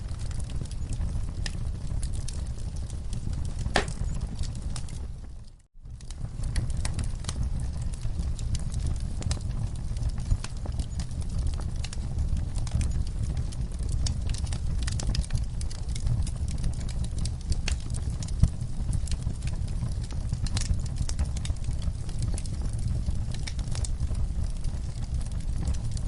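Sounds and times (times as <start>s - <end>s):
wood fire crackling and popping: 0.0s - 26.0s.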